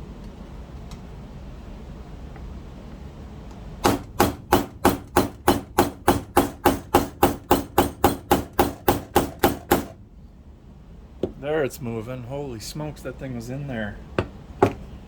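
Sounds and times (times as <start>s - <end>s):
hammer striking a pin punch: 3.8s - 10.0s, 14.2s - 14.8s.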